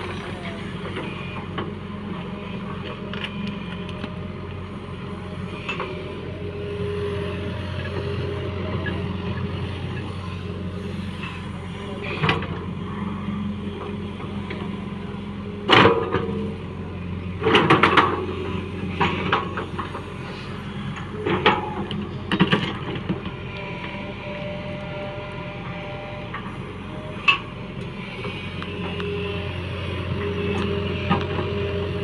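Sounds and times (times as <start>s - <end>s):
diesel engine running: 0.0s - 32.0s.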